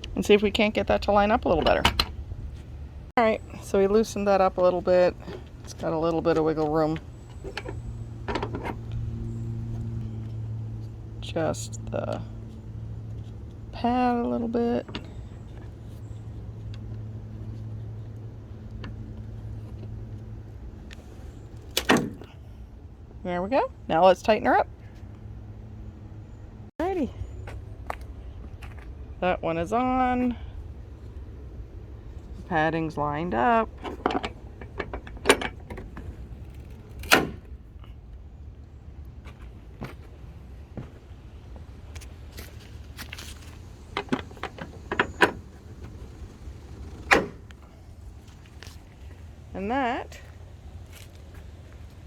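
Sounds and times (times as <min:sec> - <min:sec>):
metal latch parts clicking: 0:33.7 - 0:37.5, 0:43.9 - 0:47.6
metallic clicks from hood latch: 0:33.8 - 0:37.5.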